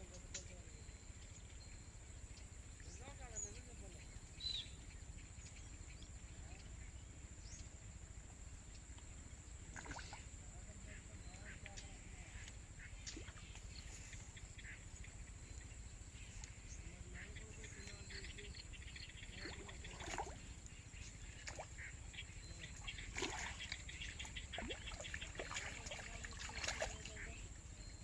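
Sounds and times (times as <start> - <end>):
steady low hum: 0.0 - 28.0
rapid ticking calls: 11.2 - 28.0.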